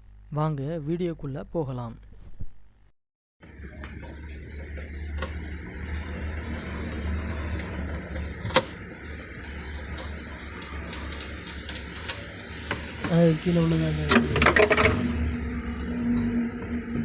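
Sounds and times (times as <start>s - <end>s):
low hum: 3.4s - 17.0s.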